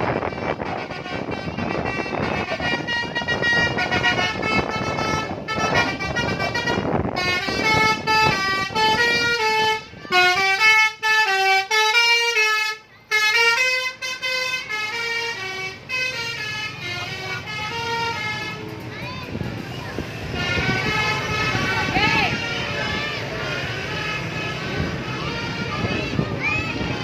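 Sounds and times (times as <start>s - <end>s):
musical bus horn: 0.0s - 18.9s, 19.9s - 27.0s
noisy rumble: 13.3s - 27.0s.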